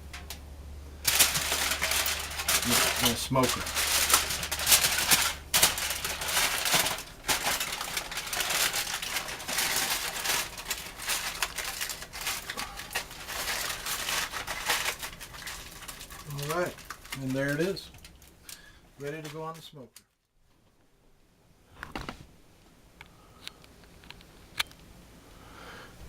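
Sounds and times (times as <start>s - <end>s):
aluminum foil crinkling: 1.0s - 20.0s.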